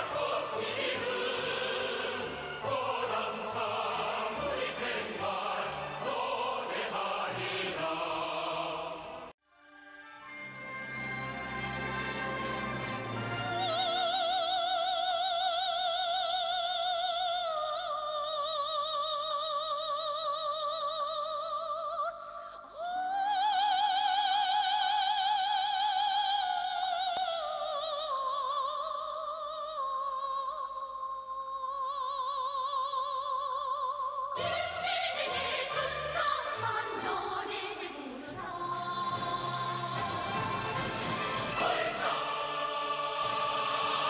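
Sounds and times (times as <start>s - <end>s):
soprano singing operatic notes: 13.2s - 44.0s.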